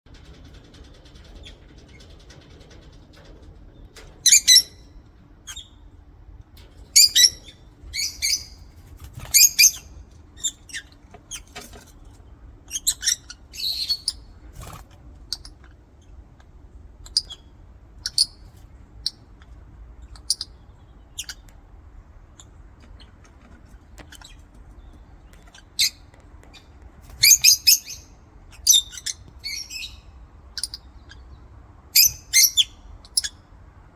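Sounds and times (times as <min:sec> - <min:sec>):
lovebirds chirping shrilly: 0:07.0 - 0:11.5, 0:27.1 - 0:31.2, 0:32.0 - 0:33.3.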